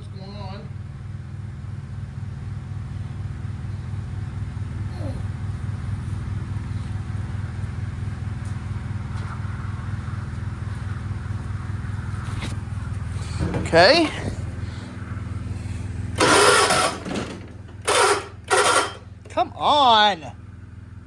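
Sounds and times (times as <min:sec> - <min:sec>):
starter cranking engine: 0:12.7 - 0:19.5.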